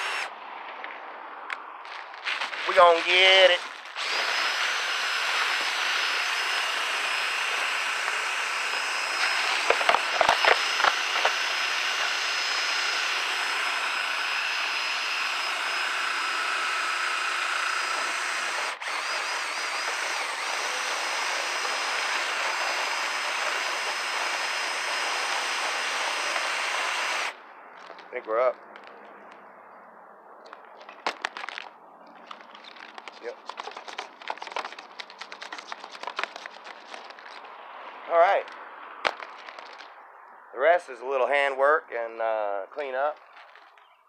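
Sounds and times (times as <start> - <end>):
power drill spinning brush: 0.0 - 0.3, 2.2 - 27.4, 32.3 - 37.5, 38.4 - 39.9.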